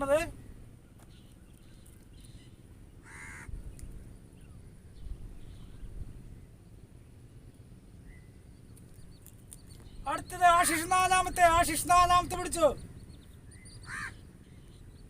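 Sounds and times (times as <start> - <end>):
faint low background noise: 0.0 - 15.0
bird call: 8.0 - 15.0.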